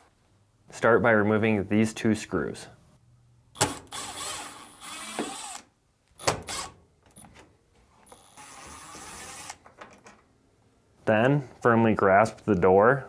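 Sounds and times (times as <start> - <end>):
powered driver motor whining: 3.6 - 5.6, 6.2 - 7.2, 8.1 - 9.6
driver bit clicking: 3.6 - 7.3.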